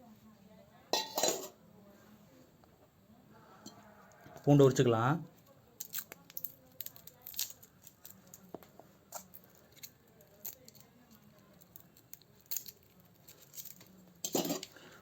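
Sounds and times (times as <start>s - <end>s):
garlic skin crackling: 5.3s - 15.0s.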